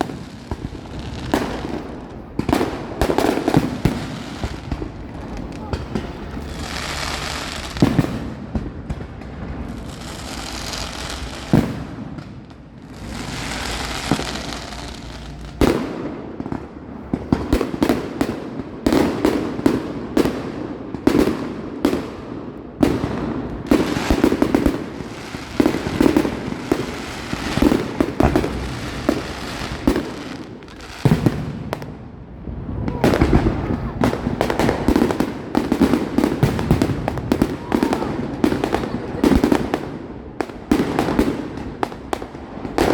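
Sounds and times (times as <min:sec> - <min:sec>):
fireworks shells bursting: 0:00.0 - 0:18.6, 0:22.9 - 0:32.0
fireworks hissing crackle: 0:00.0 - 0:42.9.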